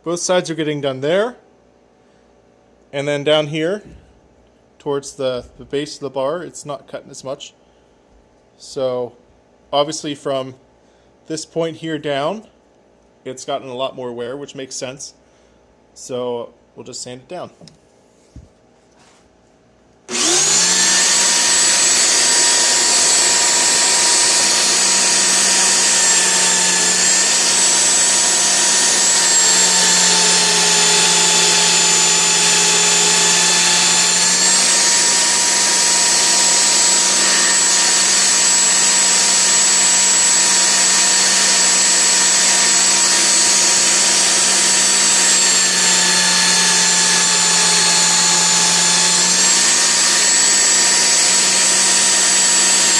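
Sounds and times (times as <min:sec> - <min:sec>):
belt sander whining: 0:20.1 - 0:52.9.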